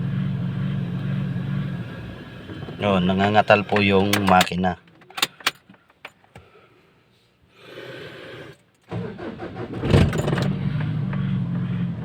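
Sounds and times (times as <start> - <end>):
rough engine idling and revving: 0.0 - 4.5, 8.9 - 12.0
ignition clicks: 2.6 - 6.2.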